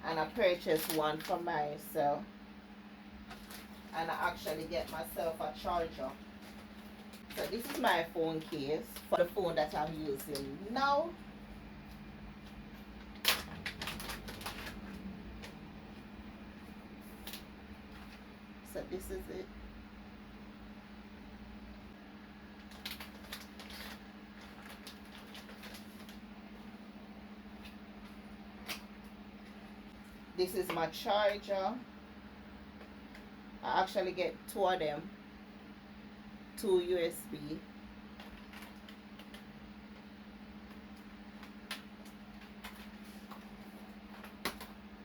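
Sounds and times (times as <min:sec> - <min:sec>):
steady low hum: 0:00.0 - 0:45.0
packaging rustling and clicking: 0:03.3 - 0:04.9, 0:12.4 - 0:15.7, 0:22.6 - 0:26.6, 0:38.1 - 0:39.5, 0:40.6 - 0:44.8.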